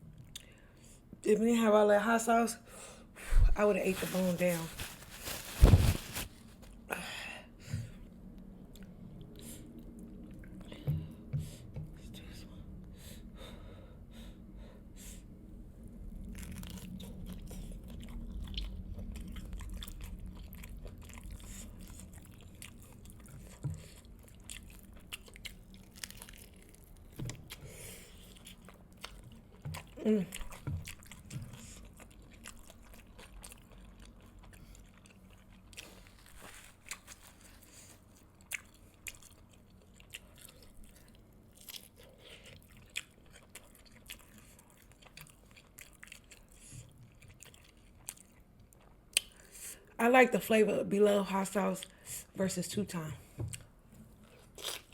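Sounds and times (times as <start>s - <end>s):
chewing fried chicken: 16.1s - 49.9s, 53.5s - 54.9s.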